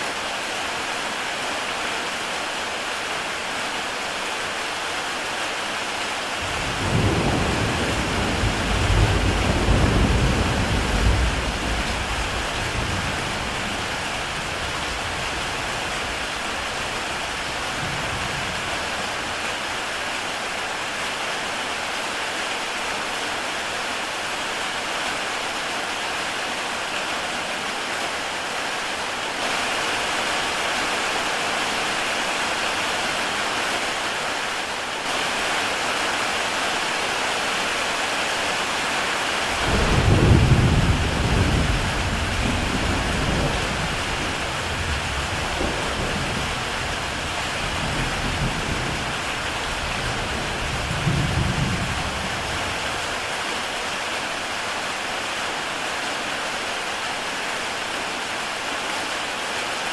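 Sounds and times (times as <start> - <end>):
heavy rain on a tile roof: 0.0 - 59.9
thunder rumbling: 6.4 - 15.6, 39.6 - 53.0.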